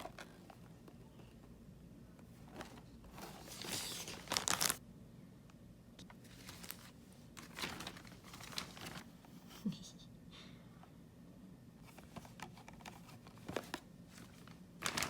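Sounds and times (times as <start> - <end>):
crinkly packaging rustling: 0.0 - 1.0, 2.3 - 4.8, 6.1 - 9.2, 11.9 - 15.0.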